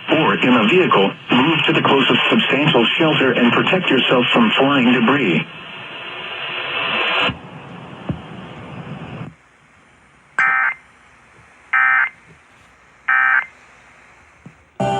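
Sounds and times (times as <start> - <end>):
radio hiss: 0.0 - 14.9
warbling data-tone bursts: 10.4 - 10.8, 11.7 - 12.2, 13.1 - 13.5.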